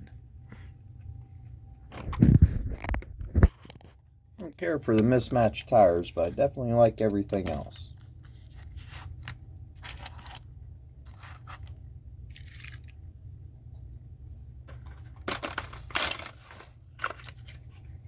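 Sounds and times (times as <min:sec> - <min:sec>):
steady low hum: 0:00.0 - 0:18.0
plastic packaging crinkling and tearing: 0:11.1 - 0:12.9.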